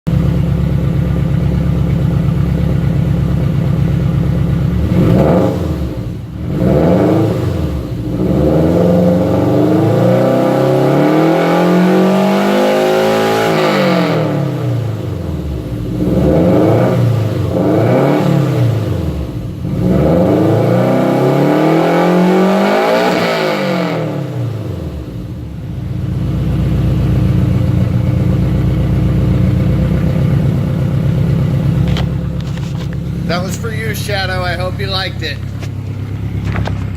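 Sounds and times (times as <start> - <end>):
car engine idling and revving: 0.0 - 36.9.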